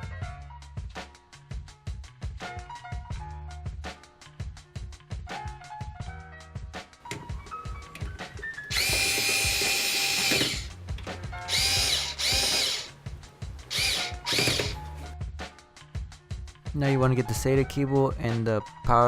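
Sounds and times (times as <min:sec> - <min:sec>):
power screwdriver running: 0:07.2 - 0:10.7, 0:11.4 - 0:13.0, 0:13.7 - 0:15.0.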